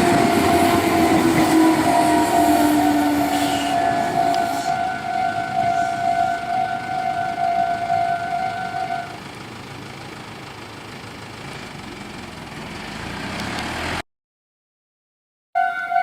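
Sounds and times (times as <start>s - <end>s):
level crossing warning bell: 0.0s - 9.3s, 15.6s - 16.0s
vehicle engine and tyre noise: 0.0s - 14.0s.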